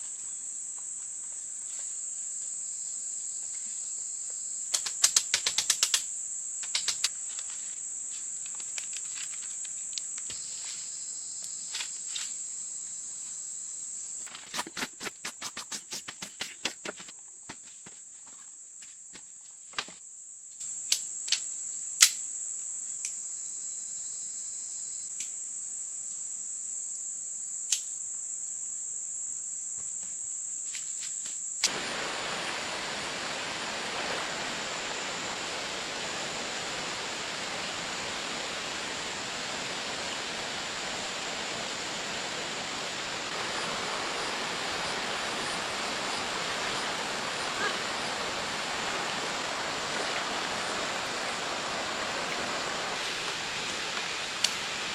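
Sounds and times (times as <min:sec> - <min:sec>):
steady rushing hiss: 0:00.0 - 0:17.1, 0:30.6 - 0:54.9
insects droning: 0:00.0 - 0:54.9.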